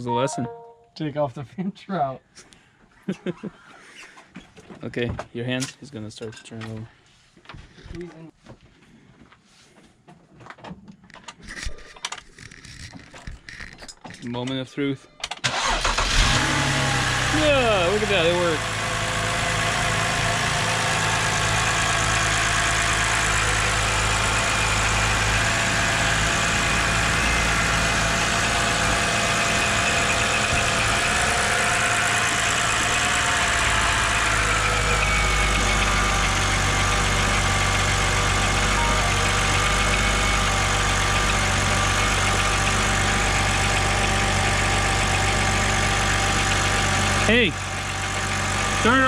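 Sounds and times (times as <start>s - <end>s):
car engine idling: 15.5s - 49.0s
high whine: 38.7s - 40.6s.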